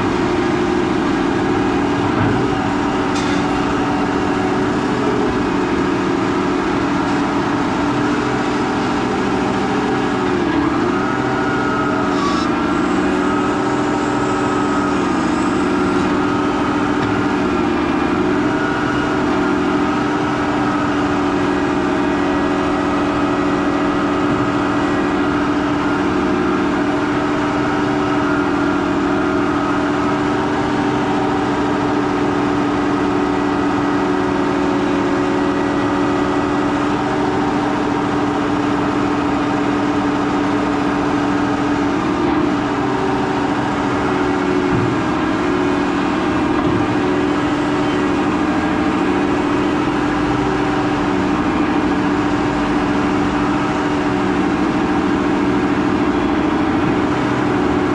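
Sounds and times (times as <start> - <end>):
tractor engine running: 0.0 - 57.9.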